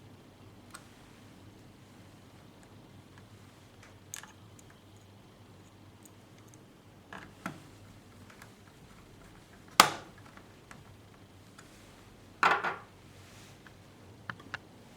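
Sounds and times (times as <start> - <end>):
hard objects knocking: 12.4 - 12.9.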